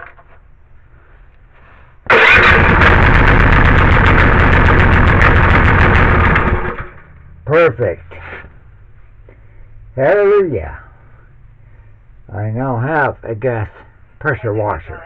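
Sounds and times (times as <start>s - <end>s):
small gasoline engine running: 2.1s - 7.0s.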